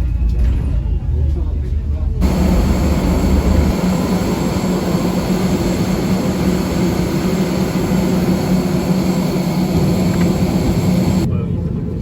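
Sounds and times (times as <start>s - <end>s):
vehicle running noise: 2.2s - 11.3s.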